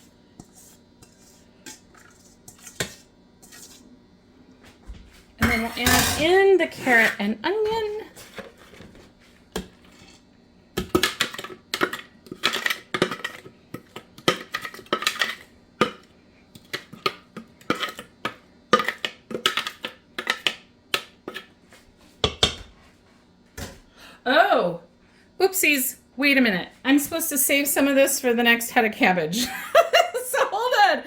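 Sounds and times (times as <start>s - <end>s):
kitchenware clinking against bowl: 5.4s - 7.2s.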